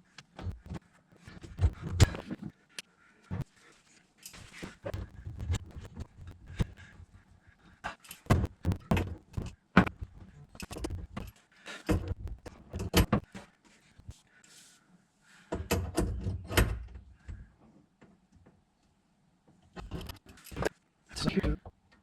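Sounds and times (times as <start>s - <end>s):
hard objects knocking: 8.3s - 11.3s.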